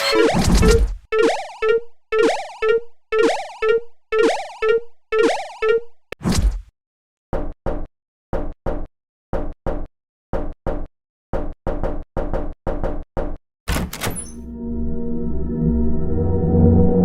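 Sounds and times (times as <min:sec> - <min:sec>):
sustained musical tones: 0:14.4 - 0:17.0.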